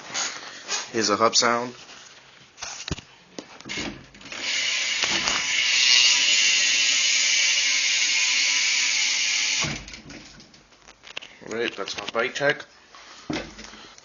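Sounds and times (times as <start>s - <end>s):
bicycle hub ratcheting buzz: 4.2s - 10.0s.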